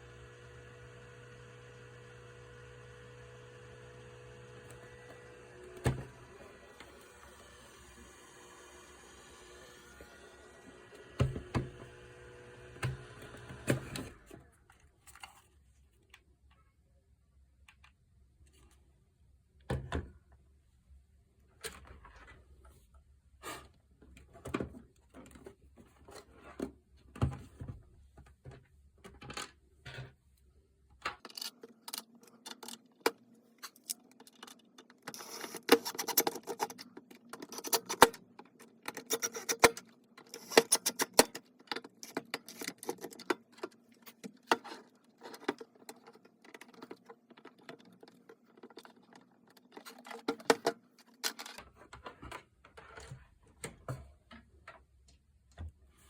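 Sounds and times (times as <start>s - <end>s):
small hard parts clicking: 31.2s - 51.7s.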